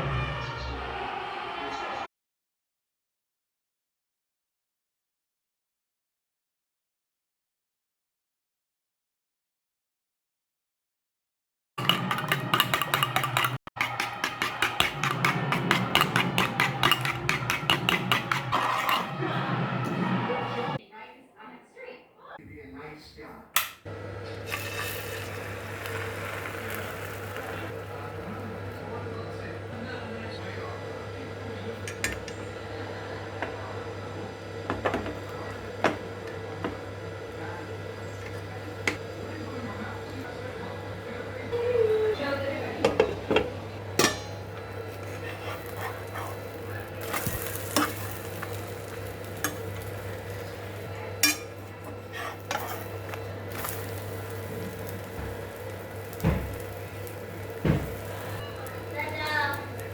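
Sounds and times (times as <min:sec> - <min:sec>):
utensil knocking rapidly: 0:11.8 - 0:19.1
dishes and utensils clinking: 0:11.8 - 0:20.8, 0:31.7 - 0:32.5, 0:42.8 - 0:58.9.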